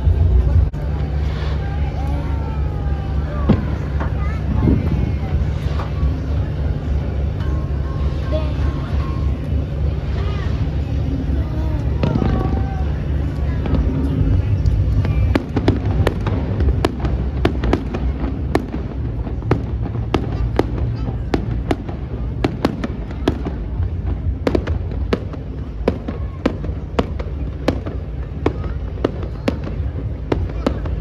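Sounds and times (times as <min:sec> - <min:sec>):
continuous low rumble: 0:00.0 - 0:31.0
fireworks cracking: 0:00.0 - 0:31.0.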